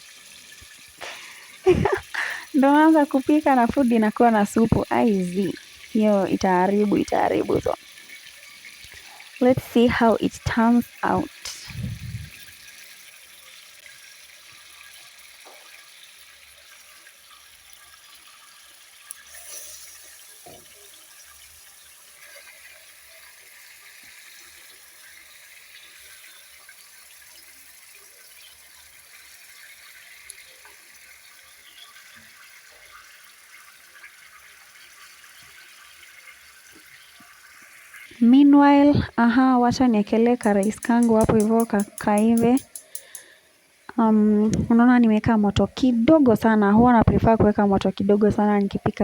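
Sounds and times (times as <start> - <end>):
chicken sizzling in oil: 0.0 - 45.0.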